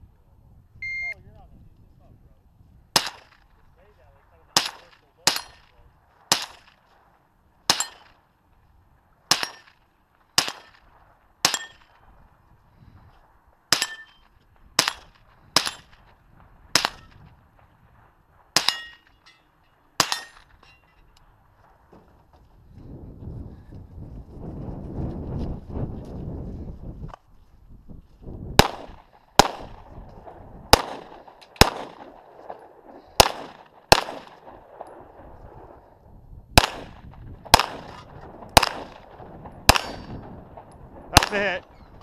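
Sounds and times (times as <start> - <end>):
handgun shots: 9.3 - 9.8, 16.8 - 17.2, 18.6 - 19.1, 30.8 - 32.1, 33.2 - 34.4, 36.6 - 39.0, 39.7 - 40.2.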